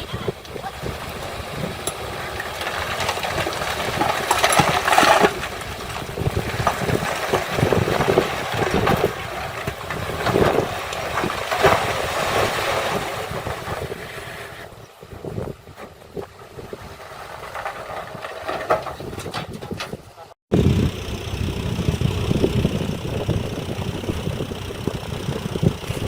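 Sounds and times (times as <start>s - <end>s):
heavy machinery diesel engine working: 0.0s - 14.5s, 20.5s - 26.0s.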